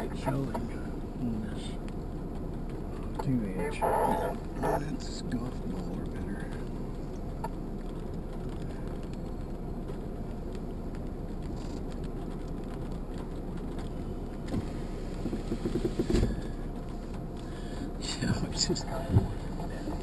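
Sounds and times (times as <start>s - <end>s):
vehicle engine rumble: 0.0s - 20.0s
knocks and thump: 14.5s - 16.6s.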